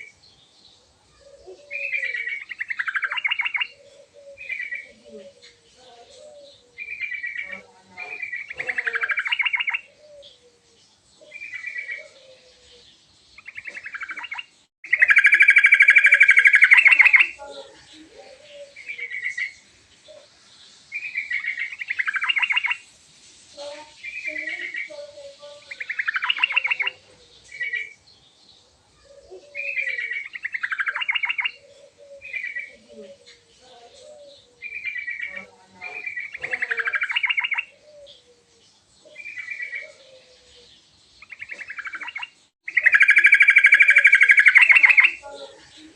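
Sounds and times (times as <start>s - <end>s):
bird trill: 1.2s - 5.0s, 6.4s - 10.4s, 13.3s - 17.7s, 20.9s - 22.8s, 24.0s - 28.0s, 29.0s - 38.3s, 39.1s - 45.9s
bird singing chattering notes: 1.6s - 10.4s, 11.2s - 20.2s, 20.9s - 22.9s, 23.6s - 28.4s, 29.5s - 45.9s.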